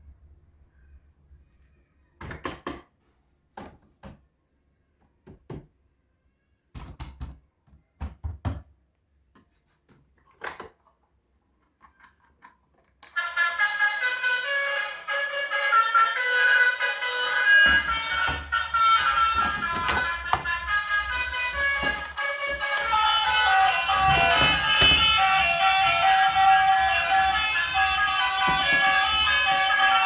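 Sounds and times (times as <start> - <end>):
music: 13.1 - 30.0
toy vehicles knocking: 13.1 - 30.0.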